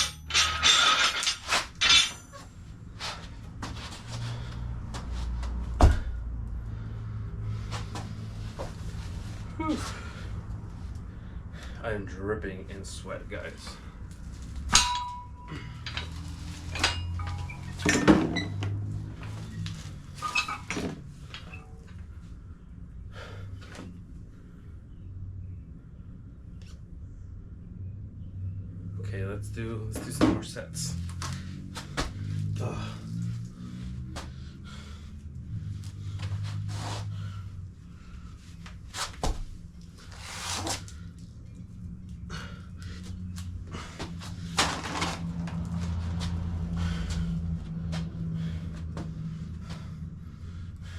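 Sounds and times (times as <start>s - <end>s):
sharp metal knocks and clanks: 0.0s - 2.5s, 14.6s - 18.8s
low steady hum: 0.0s - 50.9s
low hum: 13.6s - 29.1s.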